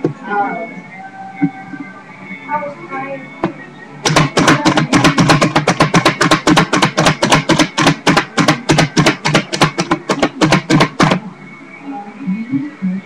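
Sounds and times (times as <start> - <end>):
rapid percussive music: 4.0 - 11.2.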